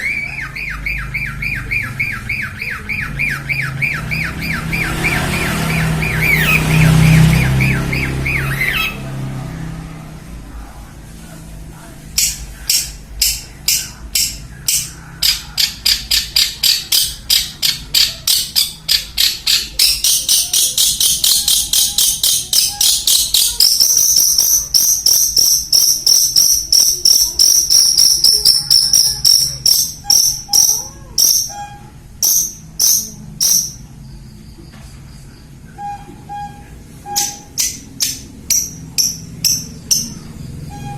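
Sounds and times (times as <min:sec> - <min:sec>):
bird harsh rasping chatter: 0:00.0 - 0:09.1, 0:12.1 - 0:34.1, 0:35.4 - 0:40.9.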